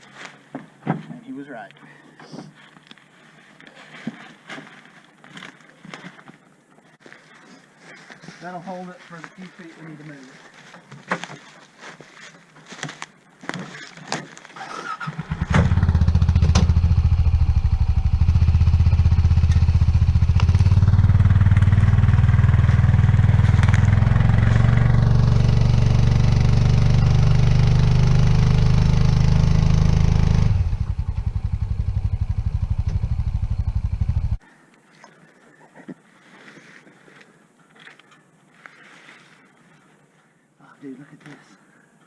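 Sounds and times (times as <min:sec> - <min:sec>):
engine running at low pitch: 0:15.3 - 0:34.4.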